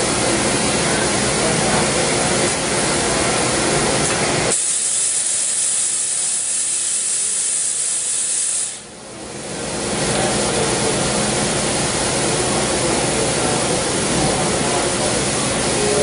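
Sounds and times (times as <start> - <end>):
milling machine running: 0.0 - 16.0
loud high hiss: 4.4 - 8.9.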